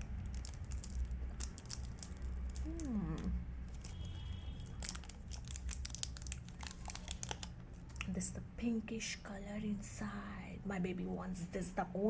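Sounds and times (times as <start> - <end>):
steady low hum: 0.0 - 4.4
chocolate wrapper crinkling: 0.0 - 8.2
person humming: 2.6 - 3.4.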